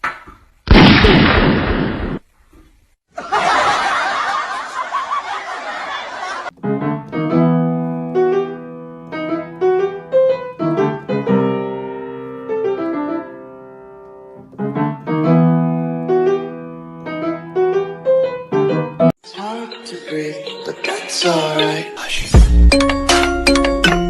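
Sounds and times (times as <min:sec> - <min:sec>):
piano music: 0:06.5 - 0:24.0.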